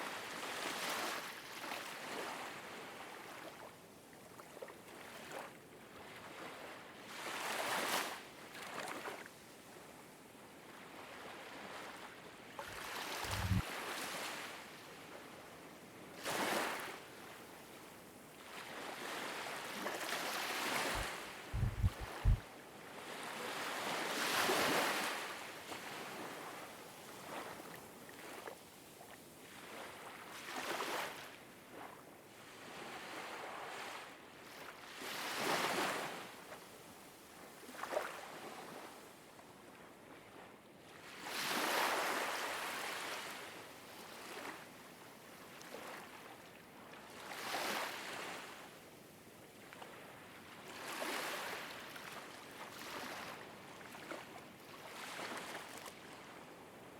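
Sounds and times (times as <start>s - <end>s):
ocean waves washing in: 12.7s - 13.6s, 20.9s - 22.4s.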